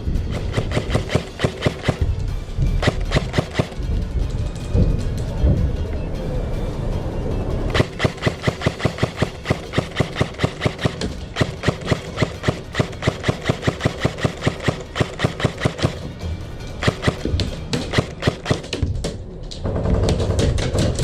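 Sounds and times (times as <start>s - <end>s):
airsoft gun rapid shots: 0.3s - 2.1s, 2.8s - 3.8s, 7.7s - 16.0s, 16.8s - 18.8s.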